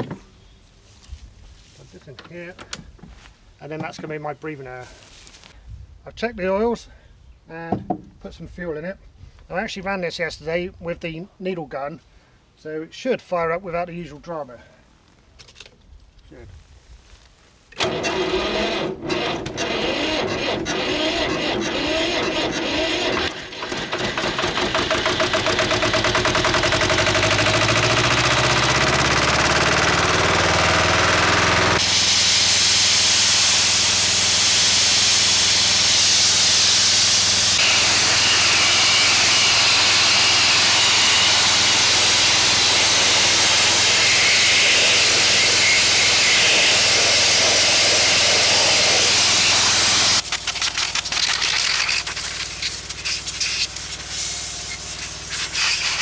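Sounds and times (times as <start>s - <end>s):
air compressor engine running: 17.8s - 56.0s
air blasting hiss: 31.7s - 56.0s.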